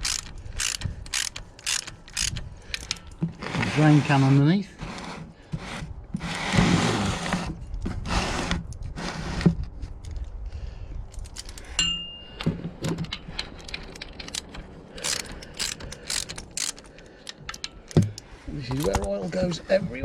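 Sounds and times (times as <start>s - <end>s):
spanner and metal parts clinking: 0.0s - 3.2s, 11.1s - 19.0s
ringing metallic ding: 11.8s - 12.4s.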